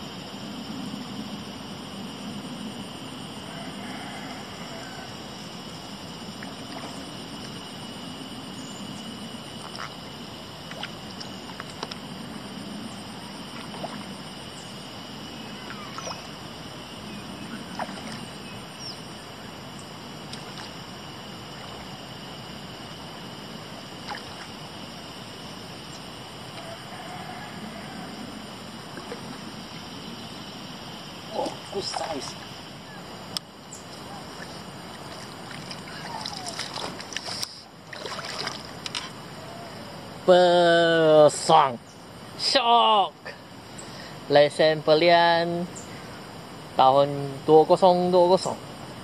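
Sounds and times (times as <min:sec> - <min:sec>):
flowing river water: 0:02.8 - 0:40.6.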